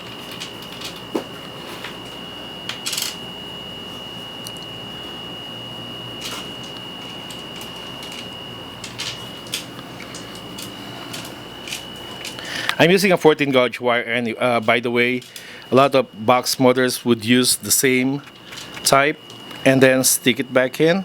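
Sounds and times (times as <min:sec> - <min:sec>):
small metal parts clicking: 0:02.7 - 0:03.2, 0:06.2 - 0:12.5.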